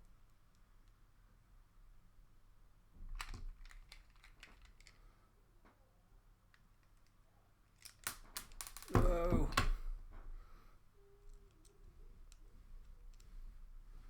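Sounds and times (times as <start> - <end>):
plastic toy parts clicking: 3.2 - 5.0, 6.5 - 8.9.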